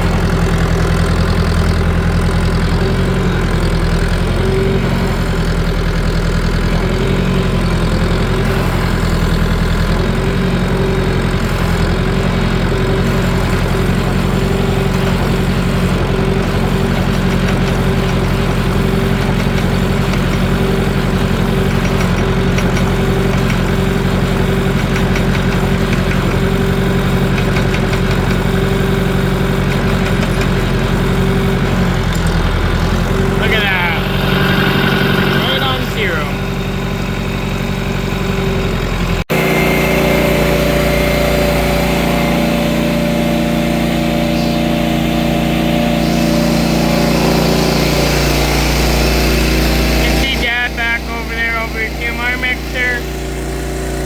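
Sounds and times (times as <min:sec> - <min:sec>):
farm machinery engine running: 0:00.0 - 0:54.0
feed mixer mixing: 0:00.0 - 0:54.0
steady tone: 0:33.1 - 0:36.8, 0:39.3 - 0:53.3.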